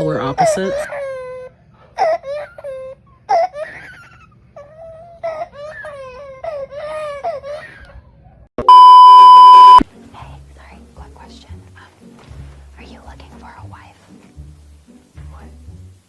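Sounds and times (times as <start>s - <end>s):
baby crying: 0.3s - 7.9s
loud steady bleep tone: 8.6s - 9.8s.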